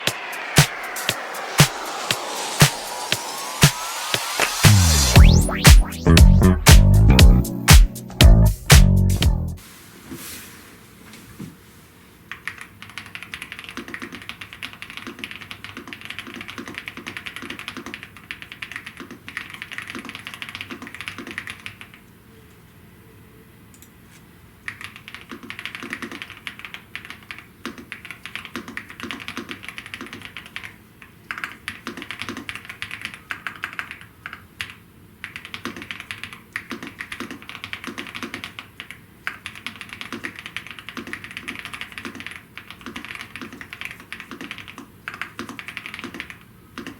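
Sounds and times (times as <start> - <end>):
mechanical keyboard typing: 24.7 - 46.9.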